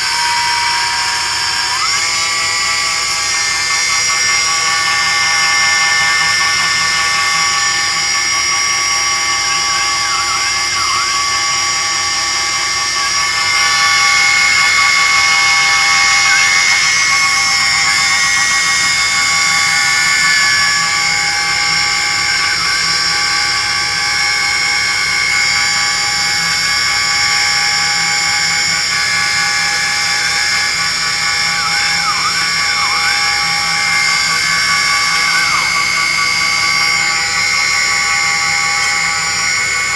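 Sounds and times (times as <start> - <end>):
quadcopter motors whining: 0.0 - 39.9.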